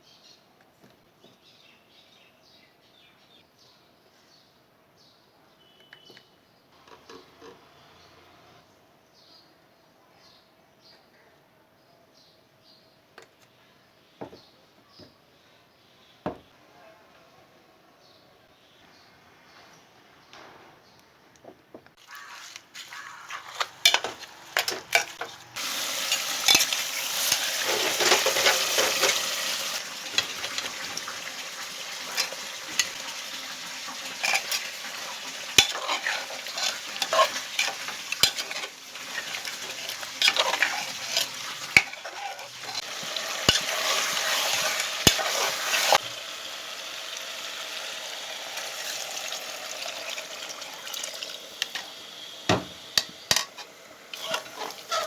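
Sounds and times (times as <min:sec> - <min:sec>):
metal spoon scraping a pan: 0:22.1 - 0:31.2, 0:32.0 - 0:46.0, 0:52.5 - 0:55.0
meat and potatoes sizzling in a pan: 0:22.1 - 0:55.0.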